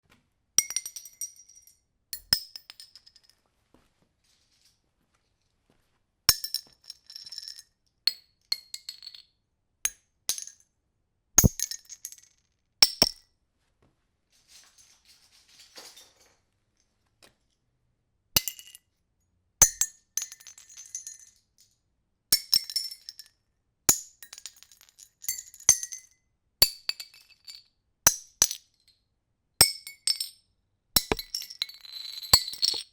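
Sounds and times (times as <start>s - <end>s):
metal caps clinking on concrete: 0.6s - 3.4s, 6.4s - 9.2s, 11.4s - 13.2s, 18.4s - 18.8s, 31.0s - 32.9s
metallic rattle of bouncing caps: 11.4s - 11.8s, 12.8s - 13.2s, 31.0s - 31.8s, 32.4s - 32.9s.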